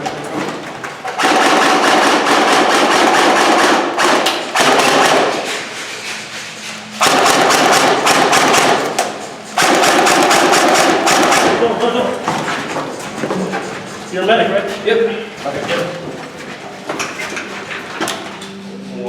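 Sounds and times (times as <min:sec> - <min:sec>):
airsoft gun firing bursts: 0:01.1 - 0:05.5, 0:07.0 - 0:09.0, 0:09.6 - 0:11.7.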